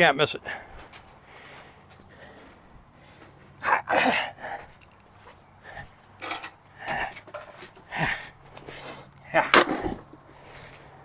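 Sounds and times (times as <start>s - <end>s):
metal parts clinking: 6.2s - 6.6s.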